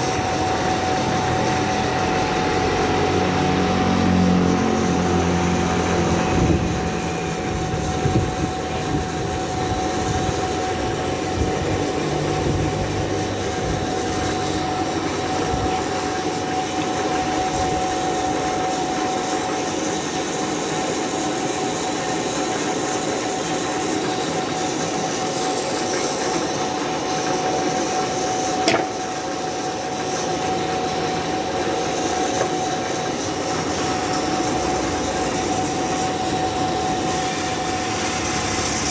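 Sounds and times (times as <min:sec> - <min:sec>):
sawmill saw ripping log: 0:28.4 - 0:29.2
sharp knock: 0:28.6 - 0:29.0.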